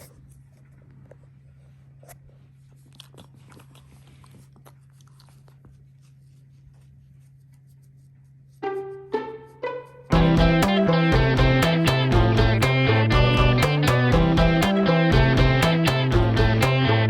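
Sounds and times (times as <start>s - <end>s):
steady low hum: 0.0s - 17.0s
dog chewing: 2.0s - 6.2s
plucked guitar music: 8.6s - 17.0s.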